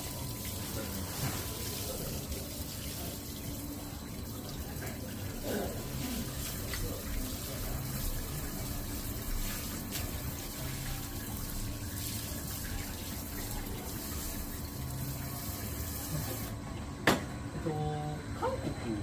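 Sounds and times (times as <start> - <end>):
tap water running: 0.0 - 17.3.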